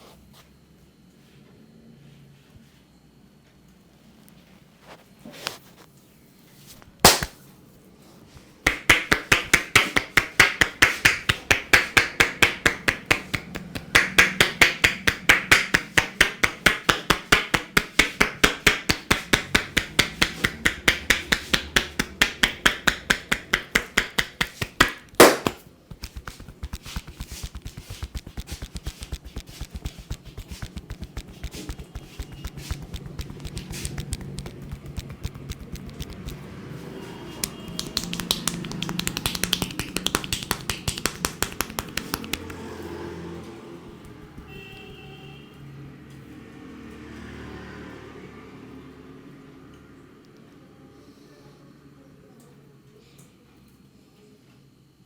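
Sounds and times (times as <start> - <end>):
hands slapping and chopping: 7.0 - 7.4, 8.6 - 36.6, 37.4 - 42.8, 43.9 - 45.1
sharp smack: 7.0 - 7.4, 8.7 - 36.4.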